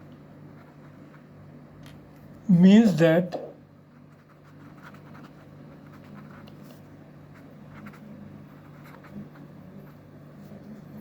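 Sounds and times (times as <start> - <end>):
low electrical hum: 0.0 - 11.0
pen scratching while writing: 4.0 - 6.8, 7.4 - 10.9.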